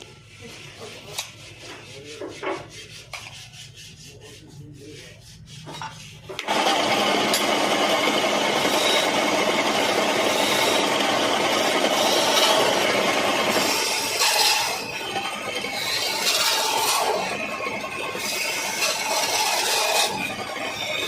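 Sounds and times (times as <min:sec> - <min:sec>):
tool rasping on spinning wood: 0:00.0 - 0:21.0
lathe low hum: 0:06.3 - 0:21.0.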